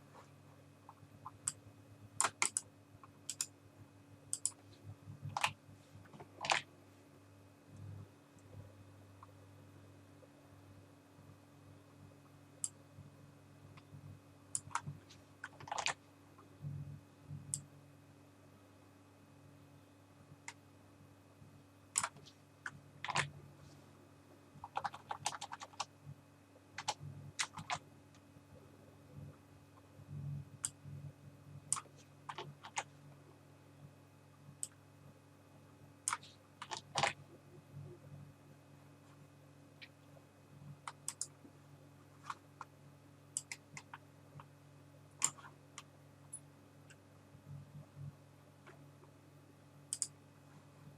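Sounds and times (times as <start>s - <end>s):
low hum: 0.0s - 24.6s
low steady hum: 0.0s - 50.9s
keyboard and mouse clicks: 2.2s - 3.5s, 4.3s - 4.6s, 5.2s - 6.7s, 14.5s - 16.0s, 21.9s - 23.3s, 24.6s - 25.9s, 26.8s - 27.8s, 30.6s - 30.8s, 31.7s - 32.9s, 36.0s - 37.2s, 40.8s - 41.4s, 43.3s - 44.5s, 45.1s - 47.0s, 49.9s - 50.2s.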